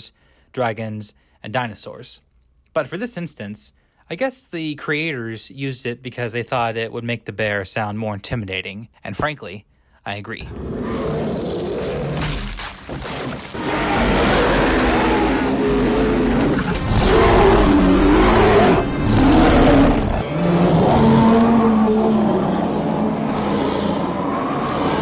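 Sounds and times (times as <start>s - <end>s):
bear roaring: 10.4s - 25.0s.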